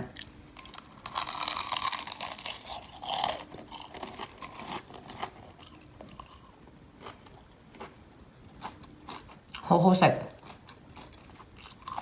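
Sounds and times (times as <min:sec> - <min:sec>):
crunching of fried coating: 0:00.2 - 0:08.0, 0:10.4 - 0:12.0.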